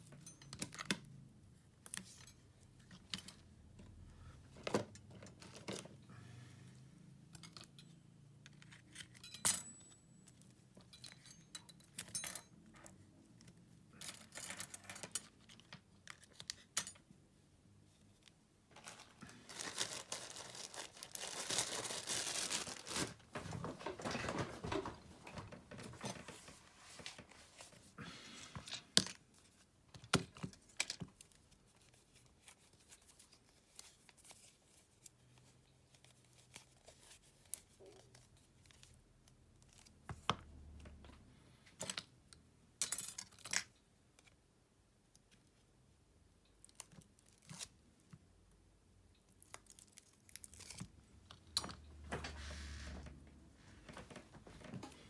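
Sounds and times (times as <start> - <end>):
scraping and rustling: 18.7 - 28.0.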